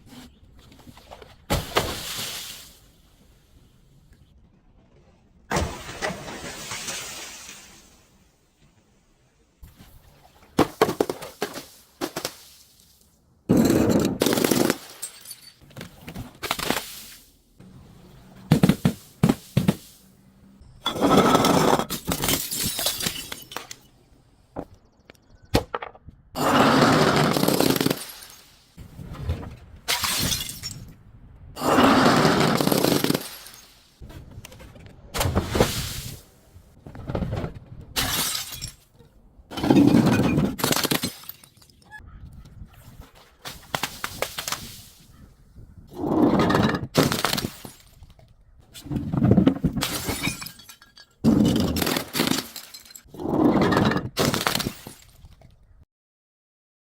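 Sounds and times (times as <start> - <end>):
glass bottles smashing: 13.5 - 15.7, 20.8 - 23.9, 26.4 - 28.6, 29.9 - 31.0, 31.6 - 33.8, 38.0 - 38.9, 39.5 - 41.9, 46.3 - 48.1, 49.6 - 55.4.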